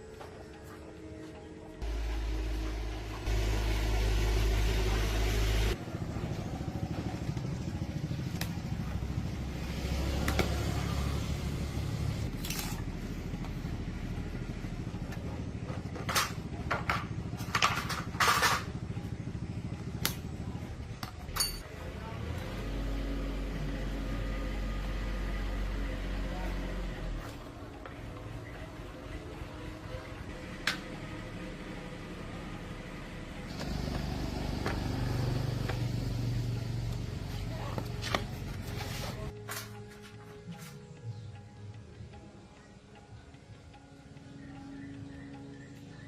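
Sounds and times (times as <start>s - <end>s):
machine humming: 0.8s - 5.8s.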